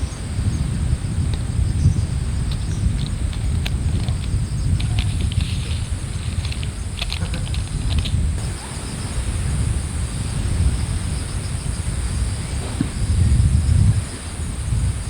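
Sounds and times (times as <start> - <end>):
wind buffeting microphone: 0.0 - 15.0
light clicks and taps: 2.5 - 8.2.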